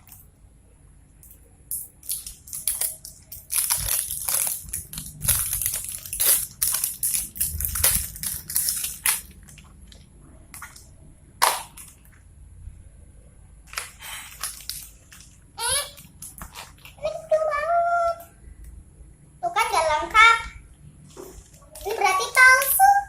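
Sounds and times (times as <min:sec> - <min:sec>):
plastic packaging crinkling: 0:02.0 - 0:10.8, 0:13.7 - 0:16.9.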